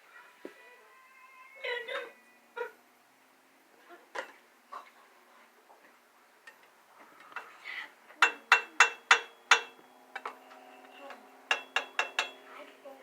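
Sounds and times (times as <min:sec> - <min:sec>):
ringing metallic clinks: 0:08.2 - 0:12.5.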